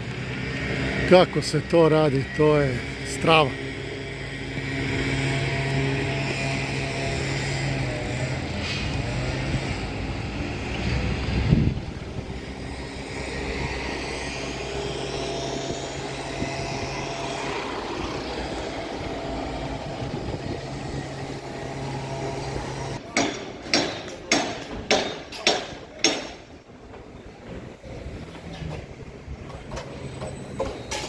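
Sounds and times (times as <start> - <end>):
steady engine hum: 0.0 - 31.0
heavy knocks: 23.2 - 26.4.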